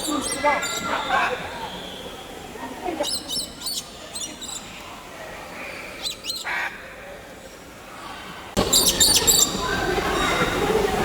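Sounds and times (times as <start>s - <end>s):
birds chirping: 0.0s - 5.0s, 8.6s - 10.9s.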